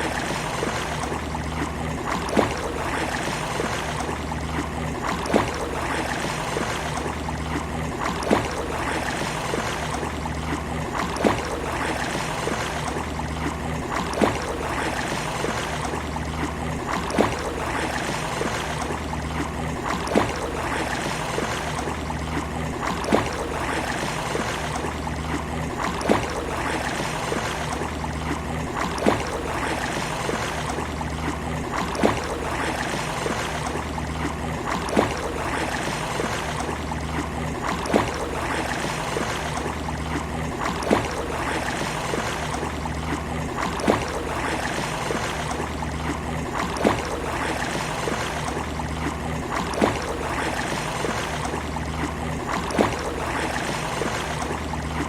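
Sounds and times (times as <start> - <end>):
sea waves on a beach: 0.0 - 55.0.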